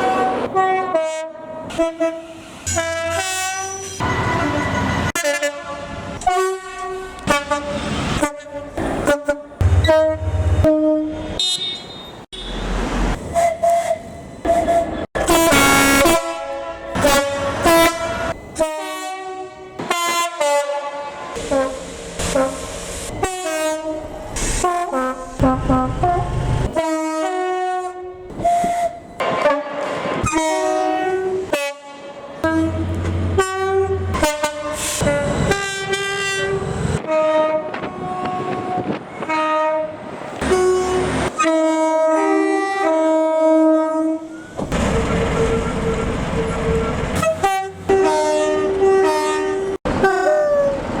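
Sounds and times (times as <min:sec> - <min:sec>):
locomotive horns playing a tune: 0:00.0 - 0:12.6, 0:13.3 - 0:50.8
train rumble: 0:21.3 - 0:51.0.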